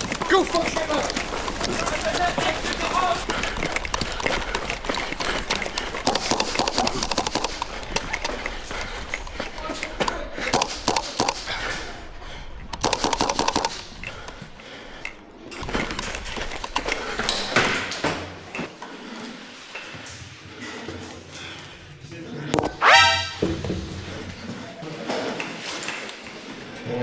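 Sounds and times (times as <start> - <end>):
airsoft guns firing: 0.0 - 12.0, 12.7 - 14.3.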